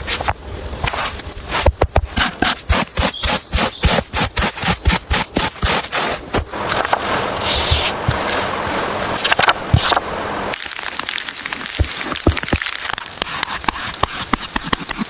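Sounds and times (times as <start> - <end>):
hand saw cutting wood: 2.2 - 8.4.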